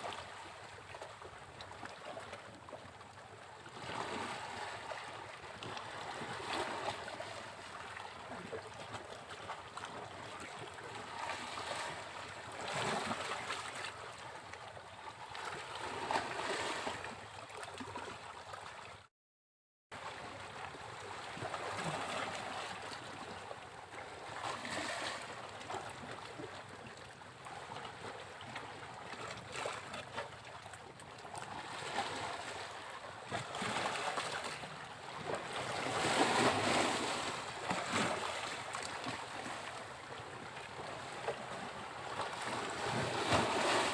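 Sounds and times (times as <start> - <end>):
sea waves breaking on beach: 31.4 - 43.9.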